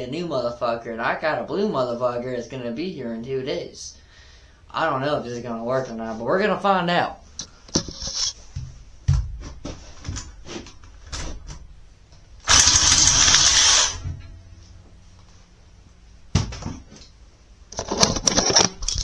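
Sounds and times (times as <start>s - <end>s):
reciprocating saw cutting metal: 12.4s - 14.3s.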